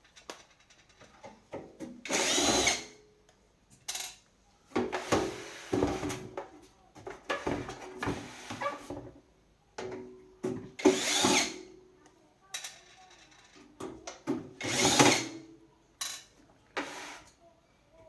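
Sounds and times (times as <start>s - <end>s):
power drill running: 2.1s - 2.9s, 10.8s - 11.6s, 14.6s - 15.3s.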